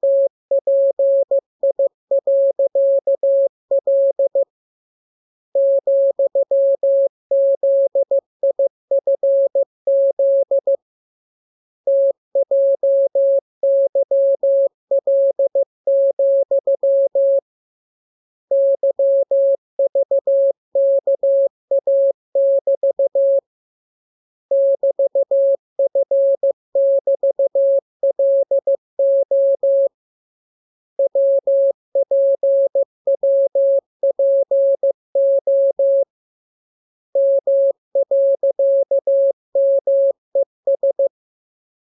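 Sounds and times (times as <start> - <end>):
morse code tone: 0.0 - 4.4, 5.6 - 10.8, 18.5 - 23.4, 24.5 - 29.9, 31.0 - 36.0, 37.2 - 41.1.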